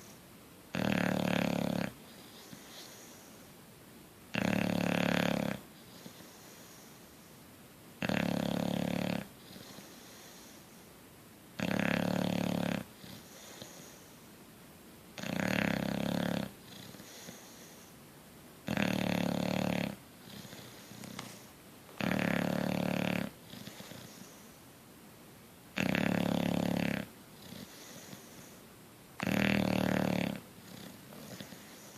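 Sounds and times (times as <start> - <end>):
dog snoring: 0.0 - 3.3, 4.3 - 7.0, 8.0 - 10.7, 11.6 - 14.2, 15.2 - 17.9, 18.6 - 21.4, 22.0 - 24.5, 25.7 - 28.6, 29.2 - 31.9
soft breath out: 20.3 - 21.6.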